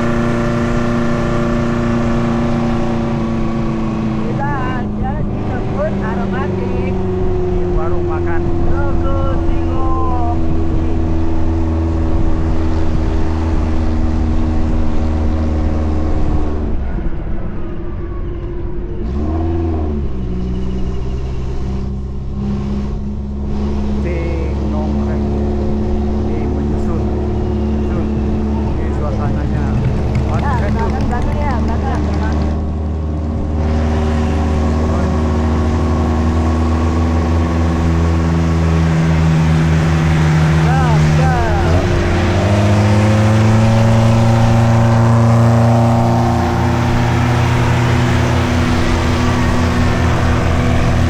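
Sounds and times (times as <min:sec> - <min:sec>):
car engine running: 0:21.7 - 0:51.0.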